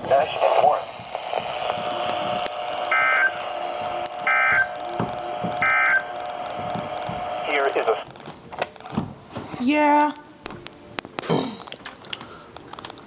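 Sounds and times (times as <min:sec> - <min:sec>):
buzzy data bursts: 0:00.0 - 0:08.2.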